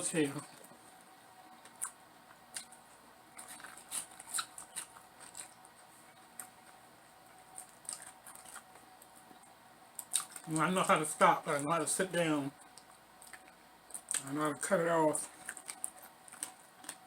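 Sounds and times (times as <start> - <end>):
person chewing crunchy food: 1.5 - 10.6, 12.6 - 14.6, 15.3 - 17.0.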